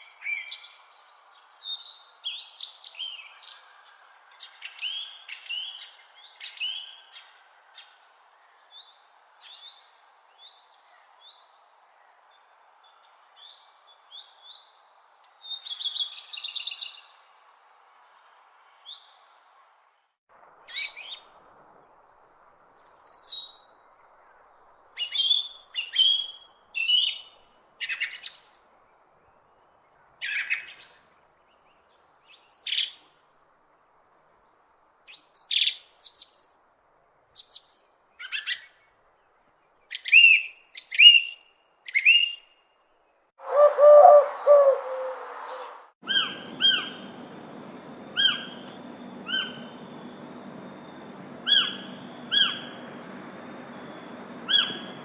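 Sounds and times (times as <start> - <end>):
faint steady hiss: 20.3 - 43.3, 44.3 - 55.0
bird repeating short call: 43.4 - 47.2, 51.4 - 53.0, 53.8 - 55.0
low bird call: 43.4 - 55.0
birds chirping and singing: 43.5 - 55.0.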